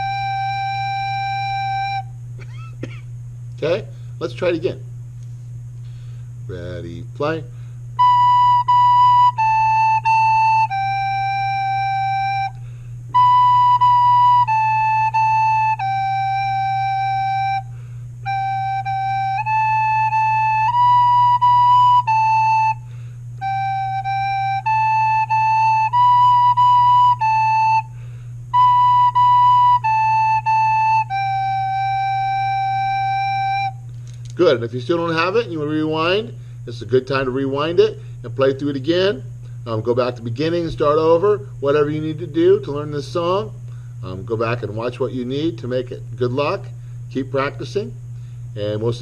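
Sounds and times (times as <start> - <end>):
recorder playing a simple tune: 0.0 - 2.2, 8.0 - 33.9
steady low hum: 0.0 - 49.0.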